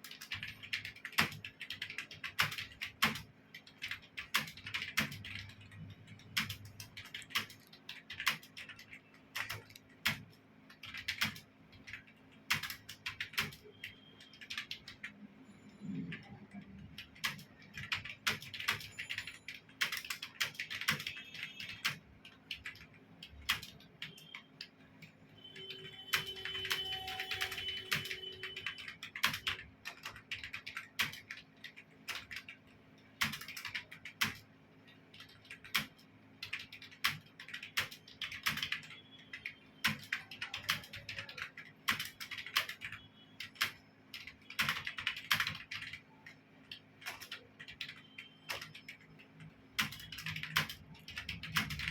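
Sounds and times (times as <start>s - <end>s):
fast typing on computer keyboard: 0.0s - 15.2s, 15.8s - 51.9s.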